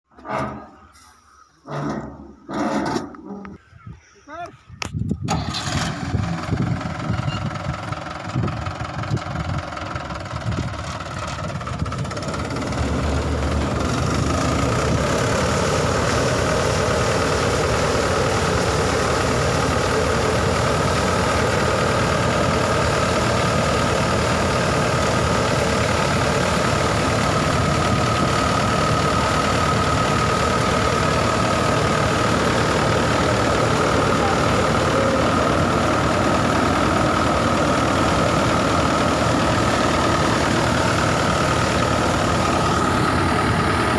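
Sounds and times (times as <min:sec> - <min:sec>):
tractor diesel engine: 0:00.1 - 0:03.8, 0:04.4 - 0:43.9
thresher machinery drone: 0:11.0 - 0:43.9.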